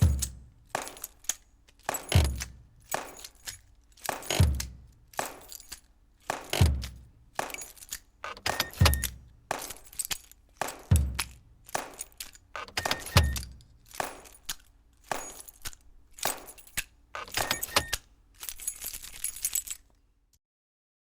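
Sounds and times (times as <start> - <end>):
rhythmic metallic jangling: 0.0 - 20.0
deep thump: 10.9 - 11.6.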